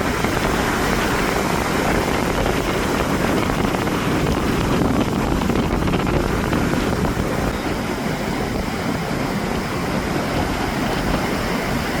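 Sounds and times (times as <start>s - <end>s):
ocean surf breaking: 0.0s - 12.0s
wind buffeting microphone: 0.0s - 12.0s.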